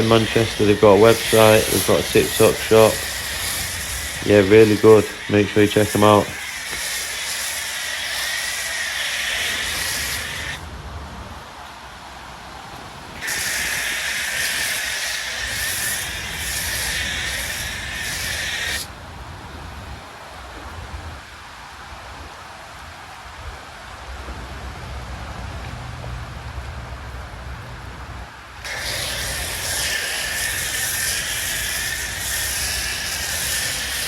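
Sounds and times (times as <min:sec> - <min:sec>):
pressure washer spraying foam: 0:00.0 - 0:10.6, 0:13.2 - 0:18.9, 0:28.6 - 0:34.0.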